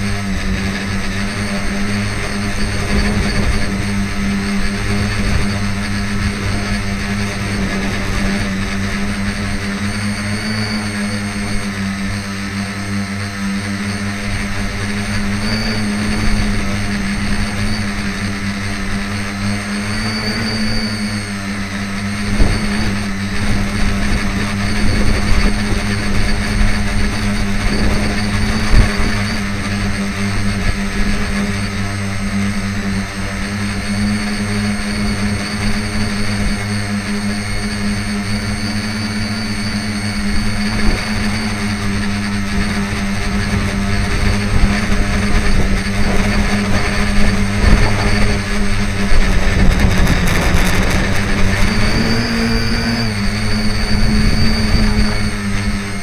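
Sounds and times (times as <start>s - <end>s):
electric motors and propellers droning: 0.0s - 56.0s
wind buffeting microphone: 13.6s - 56.0s
sharp thumps: 46.1s - 53.8s.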